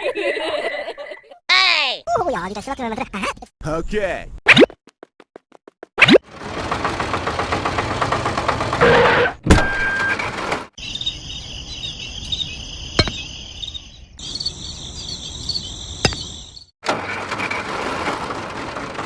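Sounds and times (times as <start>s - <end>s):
insects chirring: 10.8s - 16.7s.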